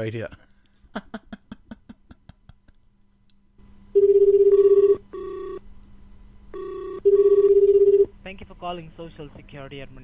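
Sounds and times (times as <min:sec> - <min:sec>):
telephone ringback tone: 0:04.0 - 0:05.6, 0:06.5 - 0:08.1.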